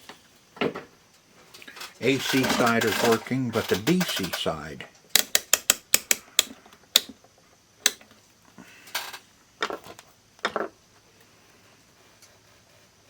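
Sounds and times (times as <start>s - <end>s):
plastic and metal rattling: 1.7s - 4.4s
sharp click: 5.1s - 7.1s.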